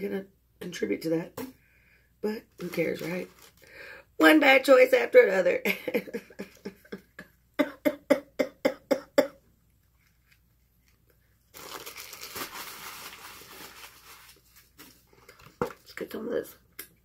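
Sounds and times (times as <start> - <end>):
food packaging rustling: 2.5 - 3.8, 10.2 - 16.0
woman laughing: 5.6 - 9.4.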